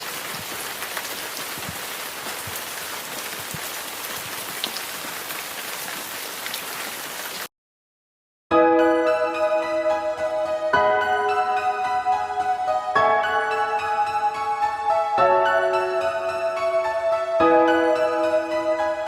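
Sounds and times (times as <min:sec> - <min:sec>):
raindrops falling: 0:00.0 - 0:07.5
steady rain hiss: 0:00.0 - 0:07.5.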